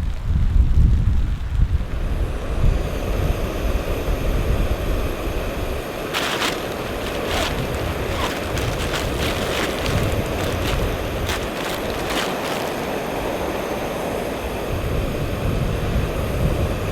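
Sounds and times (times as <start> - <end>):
strong wind blowing: 6.1 - 13.4
wind buffeting microphone: 6.1 - 13.4.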